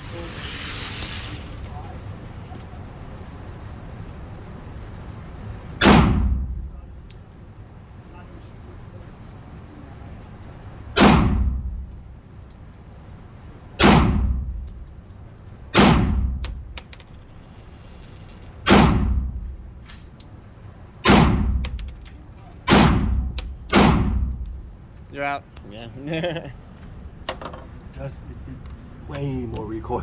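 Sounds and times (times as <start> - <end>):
handgun shots: 5.8 - 6.5, 11.0 - 11.7, 13.8 - 14.4, 15.8 - 16.7, 18.7 - 20.1, 21.0 - 22.0, 22.6 - 24.6.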